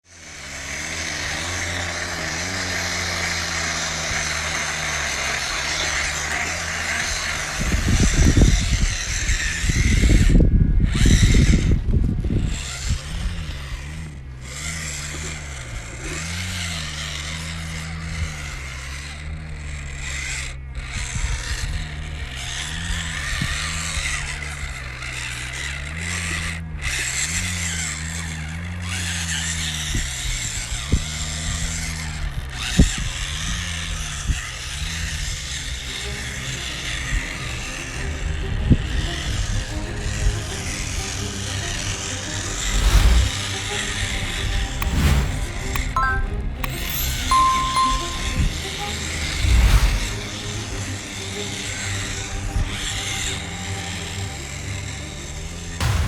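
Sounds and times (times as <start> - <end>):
loud low rumble: 40.8 - 45.8.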